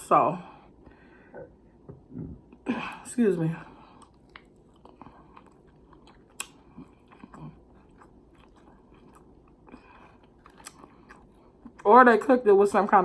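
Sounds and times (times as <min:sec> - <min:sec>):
person chewing: 0:03.7 - 0:11.9
wet mouth clicks: 0:04.0 - 0:07.4.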